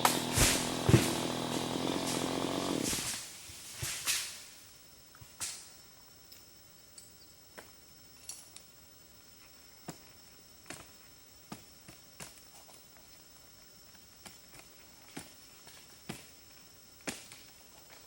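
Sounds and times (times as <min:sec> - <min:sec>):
high-pitched hum: 0:00.0 - 0:03.1.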